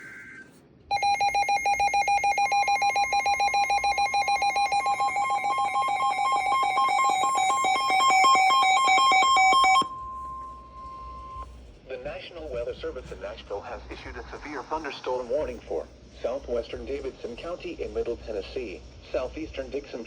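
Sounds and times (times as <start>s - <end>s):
pulsing electronic alarm beep: 0.9s - 11.5s
steady warning tone: 0.9s - 11.5s.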